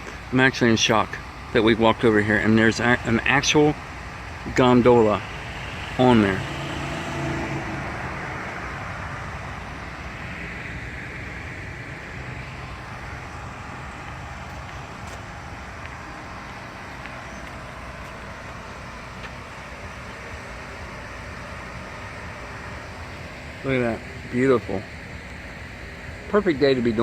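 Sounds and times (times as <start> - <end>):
low rumble: 2.0 - 26.2.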